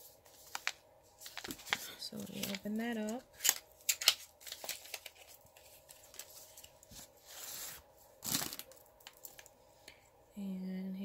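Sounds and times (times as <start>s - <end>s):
cardboard scrape: 6.9s - 7.8s.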